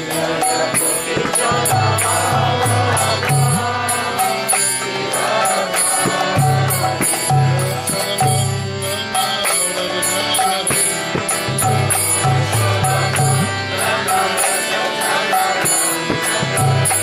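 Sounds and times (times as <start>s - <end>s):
devotional chanting: 0.0s - 17.0s
hand cymbal strikes: 0.0s - 17.0s.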